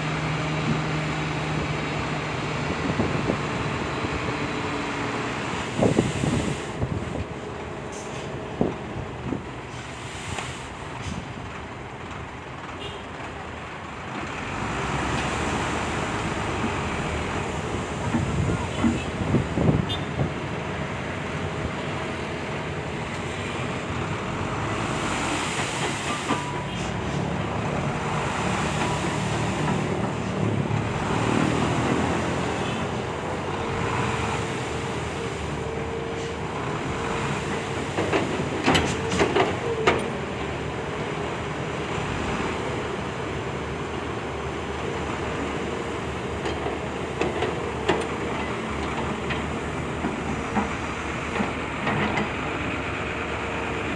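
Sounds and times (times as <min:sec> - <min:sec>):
excavator engine drone: 0:11.5 - 0:53.9.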